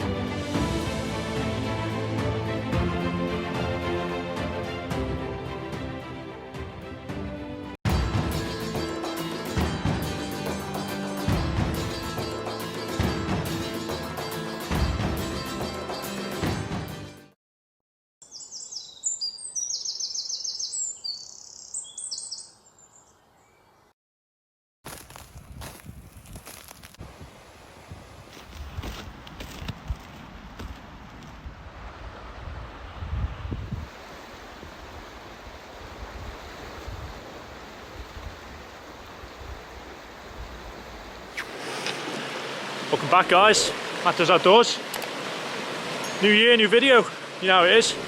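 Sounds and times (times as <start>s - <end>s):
small birds chirping: 18.2s - 23.9s
wind buffeting the microphone: 25.4s - 34.0s, 35.8s - 41.1s
sea surf: 33.8s - 48.0s.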